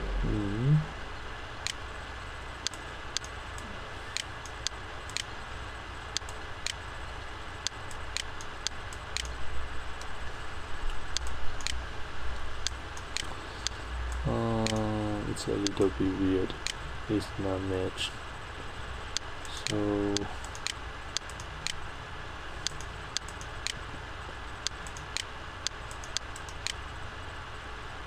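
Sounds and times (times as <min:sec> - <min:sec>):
low voiced hum: 0:00.0 - 0:01.4, 0:03.4 - 0:04.2, 0:09.3 - 0:20.5
low rumble: 0:00.0 - 0:25.7
computer mouse clicks: 0:01.6 - 0:01.8, 0:02.6 - 0:05.3, 0:06.2 - 0:06.8, 0:07.6 - 0:09.4, 0:10.9 - 0:11.8, 0:12.6 - 0:15.0, 0:19.1 - 0:21.8, 0:22.6 - 0:23.8, 0:24.6 - 0:26.8.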